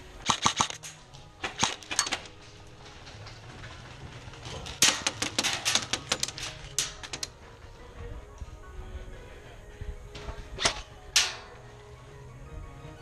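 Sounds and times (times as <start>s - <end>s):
airsoft guns firing: 0.2s - 2.2s, 4.8s - 7.0s.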